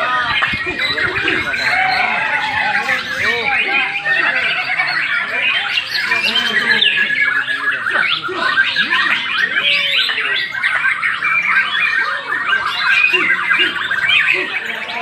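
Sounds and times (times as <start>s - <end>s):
songbirds singing: 0.0s - 15.0s.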